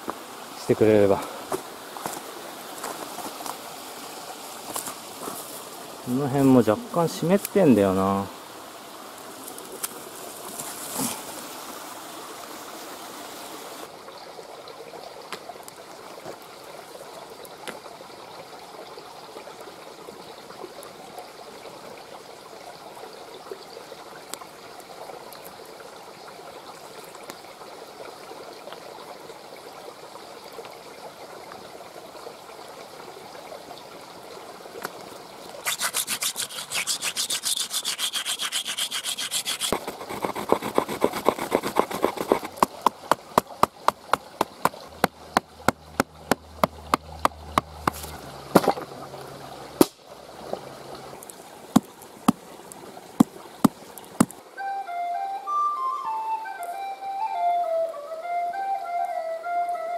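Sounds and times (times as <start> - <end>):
river water rushing: 35.3 - 54.8
wood being sawn or scraped: 35.6 - 45.1.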